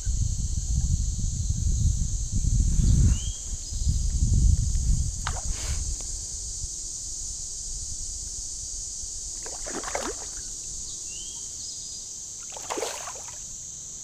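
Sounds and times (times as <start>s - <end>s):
high-pitched insect chorus: 0.0s - 14.0s
fish splashing: 9.4s - 10.5s, 12.4s - 13.4s.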